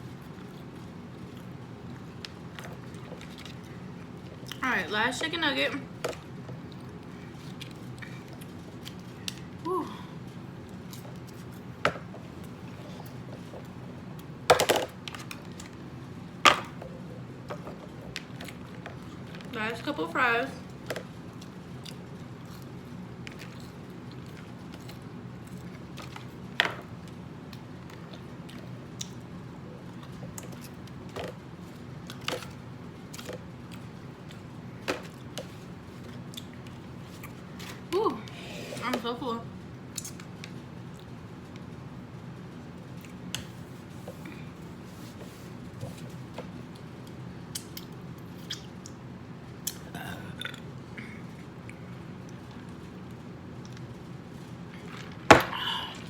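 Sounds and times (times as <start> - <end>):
steady low hum: 0.0 - 56.0
chewing fries mouth clicks: 47.5 - 49.0.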